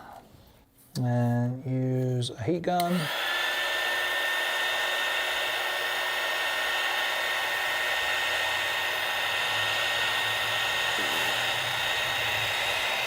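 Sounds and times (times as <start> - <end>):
heat gun blowing with fan whine: 2.8 - 13.0.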